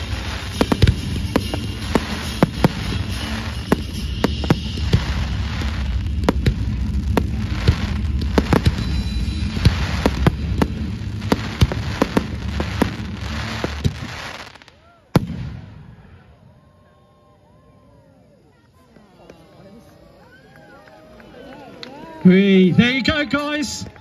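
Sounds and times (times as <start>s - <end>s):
low rumble: 0.0s - 14.2s
fireworks bangs and crackles: 0.0s - 16.9s.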